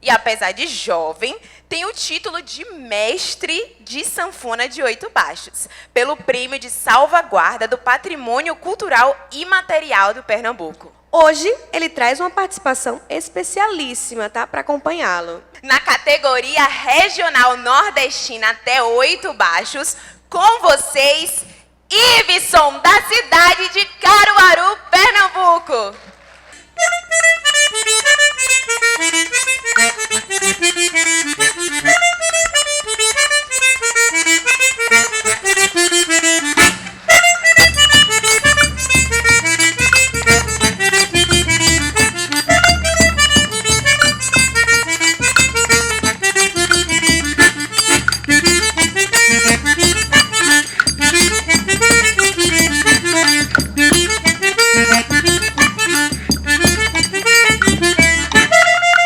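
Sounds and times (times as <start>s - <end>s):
button accordion melody: 26.5s - 59.0s
bass line and steady beat: 37.5s - 59.0s.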